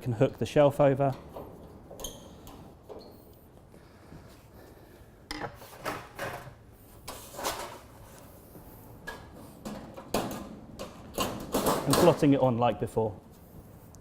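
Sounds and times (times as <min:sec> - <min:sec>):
metal parts clunking and scraping: 0:05.3 - 0:08.0, 0:09.1 - 0:12.3.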